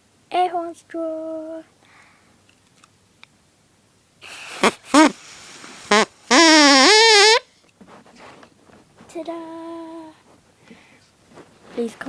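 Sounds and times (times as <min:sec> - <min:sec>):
straw reed horn squawks and honk: 0:05.9 - 0:07.4.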